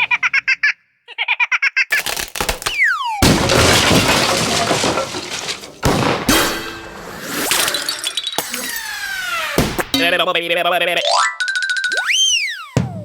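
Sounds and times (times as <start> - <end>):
glass breaking crash: 2.0 - 8.9.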